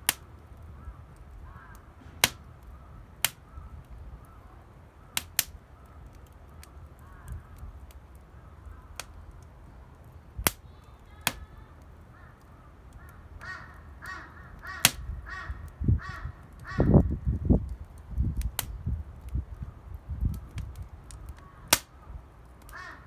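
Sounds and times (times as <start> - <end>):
campfire crackling: 0.0 - 23.0
crow cawing: 0.8 - 1.9, 7.0 - 7.4, 12.1 - 17.1, 21.4 - 21.9, 22.7 - 23.0.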